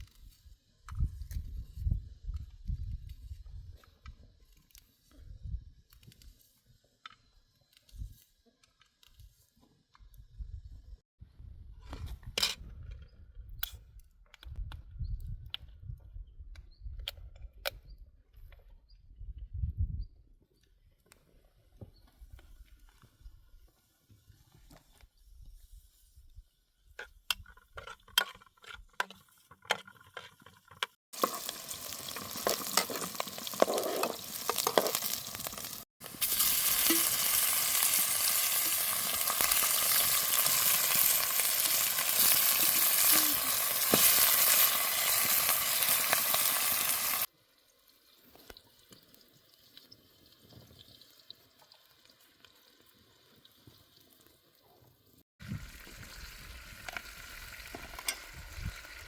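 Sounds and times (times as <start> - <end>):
food sizzling in a pan: 31.2 - 54.4.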